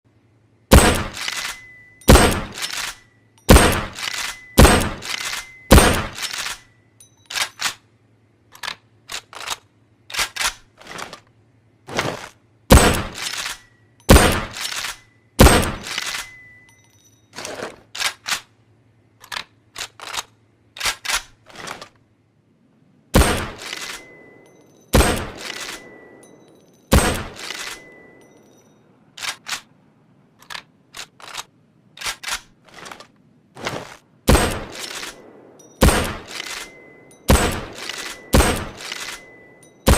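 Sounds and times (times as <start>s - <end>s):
rifle gunshots: 0.7s - 6.6s, 12.7s - 16.2s, 23.1s - 24.3s, 24.9s - 26.2s, 26.9s - 28.1s, 34.3s - 39.9s
high ring after gunshots: 0.7s - 7.8s, 12.7s - 17.2s, 23.1s - 29.5s, 34.3s - 39.9s
metallic bolt clicks: 8.5s - 11.3s, 19.2s - 22.0s.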